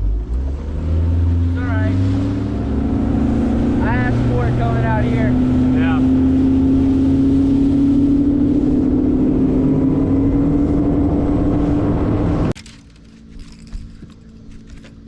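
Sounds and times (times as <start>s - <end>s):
outboard motor running: 0.0s - 15.0s.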